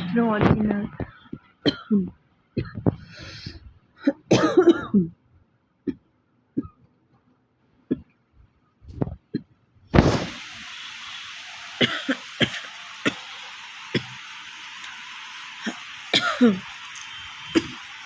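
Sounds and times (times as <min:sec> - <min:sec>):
person coughing dry coughs: 0:01.7 - 0:02.0, 0:04.1 - 0:05.1, 0:11.8 - 0:13.3, 0:15.6 - 0:16.7, 0:17.5 - 0:17.8
person clearing throat: 0:04.1 - 0:05.1, 0:11.8 - 0:13.3, 0:15.6 - 0:16.7
steady hiss: 0:10.0 - 0:18.0.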